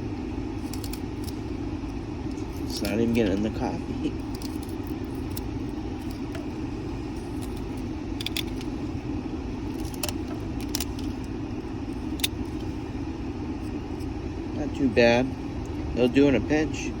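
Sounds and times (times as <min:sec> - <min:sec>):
steady low hum: 0:00.0 - 0:17.0
blade scraping pencil wood: 0:00.6 - 0:01.5, 0:02.4 - 0:03.6, 0:04.2 - 0:08.9, 0:09.6 - 0:11.3.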